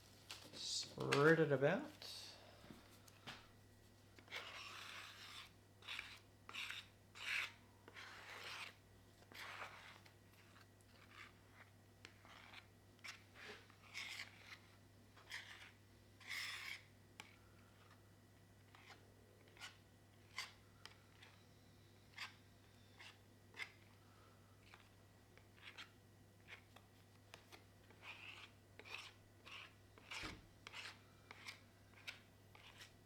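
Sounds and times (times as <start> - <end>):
glue spreading scraping strokes: 4.2 - 18.0, 27.9 - 32.9.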